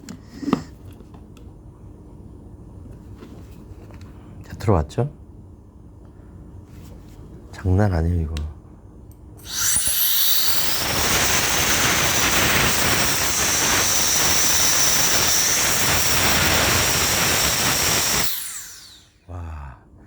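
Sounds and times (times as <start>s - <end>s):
electric air blower whining: 9.4s - 19.2s.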